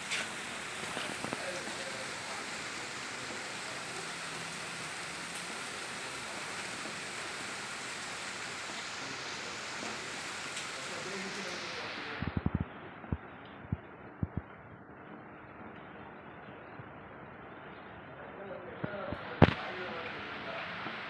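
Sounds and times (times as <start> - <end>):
heavy rain: 0.0 - 14.4, 18.7 - 21.0.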